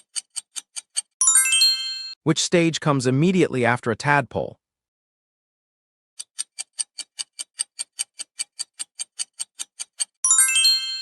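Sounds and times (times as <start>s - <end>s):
countdown timer ticking: 6.2s - 11.0s.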